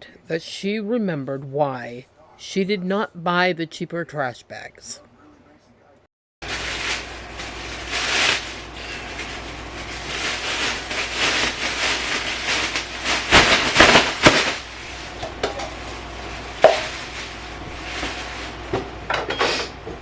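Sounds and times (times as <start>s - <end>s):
rustling: 6.4s - 15.1s
kitchenware clatter: 19.1s - 19.8s.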